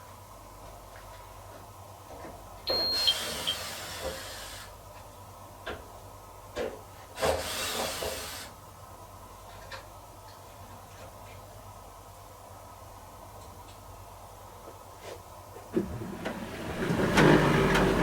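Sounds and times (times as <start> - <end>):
tumble dryer humming: 15.8 - 18.0.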